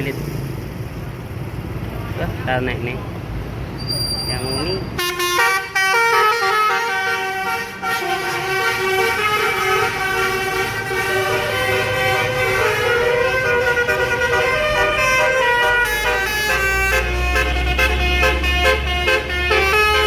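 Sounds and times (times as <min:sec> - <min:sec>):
low engine rumble: 0:00.0 - 0:20.0
multi-trumpet air horn playing a tune: 0:05.0 - 0:20.0.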